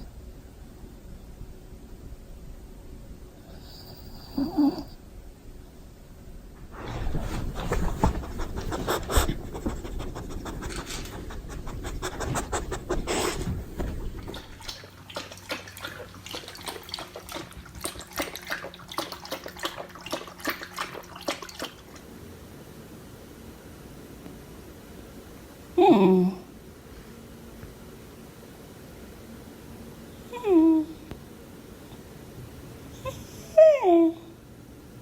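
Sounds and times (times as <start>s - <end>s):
faint steady hum: 0.0s - 35.0s
dog panting: 6.8s - 21.8s.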